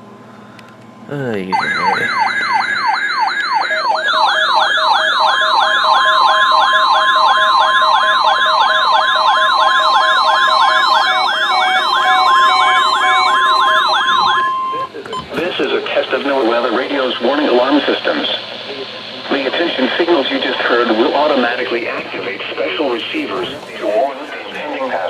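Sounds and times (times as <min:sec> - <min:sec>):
steady high warning tone: 0:00.0 - 0:25.0
weather alert siren alarms wailing: 0:01.5 - 0:15.5.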